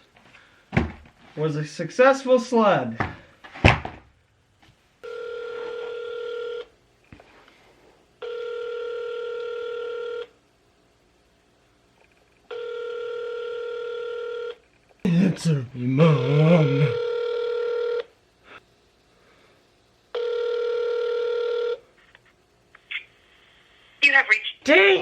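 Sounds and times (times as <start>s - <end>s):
telephone ringback tone: 5.0s - 6.7s, 8.2s - 10.3s, 12.5s - 14.6s, 16.1s - 18.1s, 20.2s - 21.8s.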